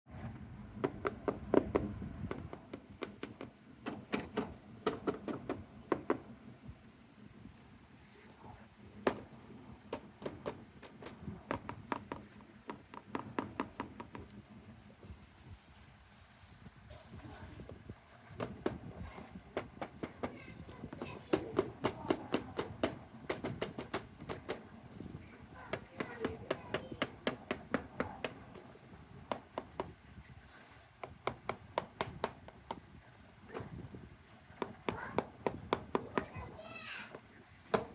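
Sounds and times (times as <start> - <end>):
faint rustle: 14.7 - 18.4.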